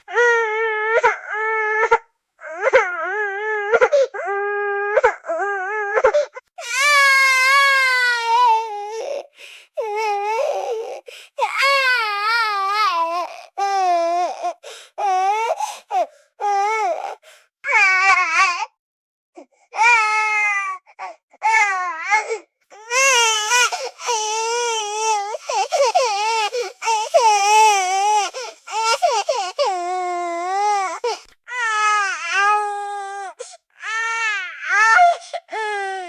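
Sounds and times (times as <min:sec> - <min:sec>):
baby crying loudly: 0:06.6 - 0:18.3, 0:22.8 - 0:36.0.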